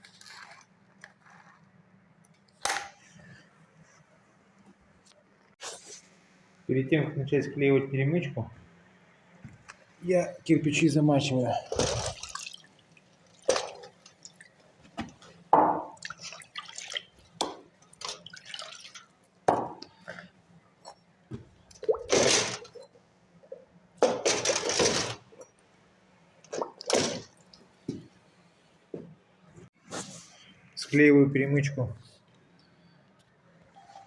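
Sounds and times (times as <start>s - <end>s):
water splashes and drips: 11.6s - 19.5s, 26.4s - 27.8s.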